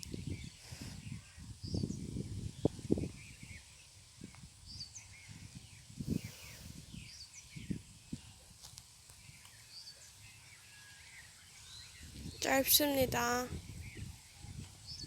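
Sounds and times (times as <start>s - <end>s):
soft bird chirping: 0.0s - 8.5s, 9.1s - 15.0s
wind buffeting microphone: 0.0s - 15.0s.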